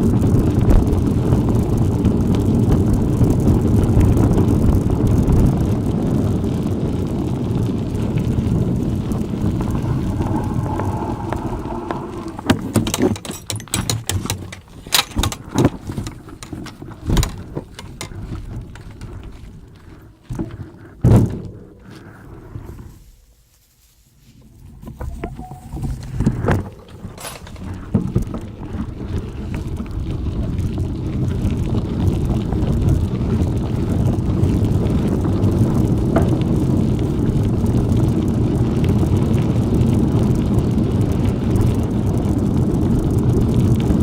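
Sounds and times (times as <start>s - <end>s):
wind buffeting microphone: 0.0s - 23.0s, 24.4s - 44.0s
bicycle rumbling on track: 0.0s - 23.1s, 24.2s - 44.0s
bike clicks and knocks: 9.5s - 19.4s, 25.0s - 29.1s.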